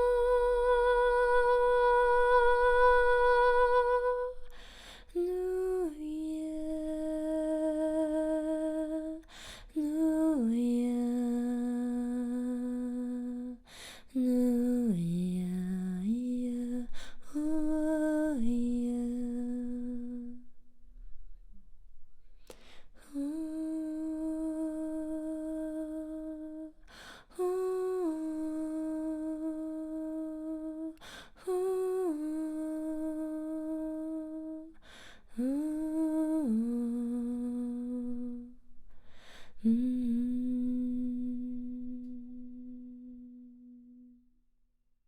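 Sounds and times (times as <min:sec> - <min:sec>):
woman humming long notes: 0:00.0 - 0:04.5, 0:27.4 - 0:34.8, 0:39.6 - 0:44.2.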